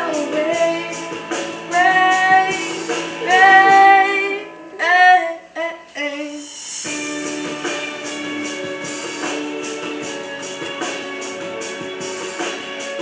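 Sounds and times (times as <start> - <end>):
guitar accompaniment: 0.0 - 5.2, 6.8 - 13.0
person singing pop ballad: 0.0 - 6.9.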